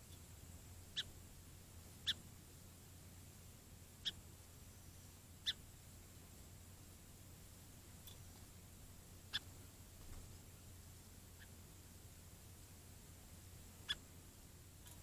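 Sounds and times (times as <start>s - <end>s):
sparrow chip calls: 0.9s - 1.2s, 2.0s - 2.3s, 4.0s - 4.2s, 4.8s - 5.7s, 8.0s - 8.3s, 9.2s - 9.6s, 11.2s - 11.9s, 13.8s - 14.1s.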